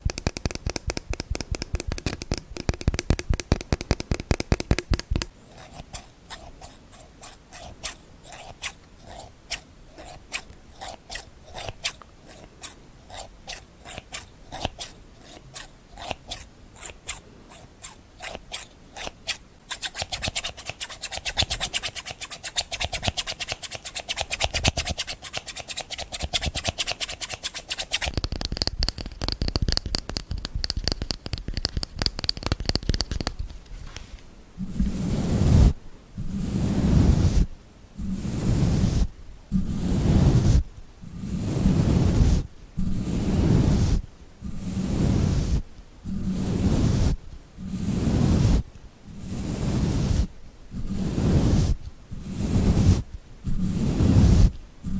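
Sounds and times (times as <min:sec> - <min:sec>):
ticking taps: 0:00.0 - 0:05.3
objects being scratched: 0:00.0 - 0:40.6, 0:41.2 - 0:48.6, 0:49.2 - 0:54.9.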